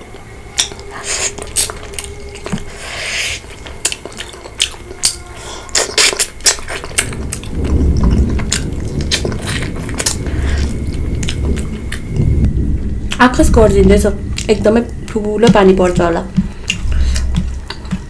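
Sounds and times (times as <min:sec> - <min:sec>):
chewing and biting: 0:00.6 - 0:12.0, 0:16.3 - 0:18.0
low rumble of thunder: 0:06.9 - 0:18.0.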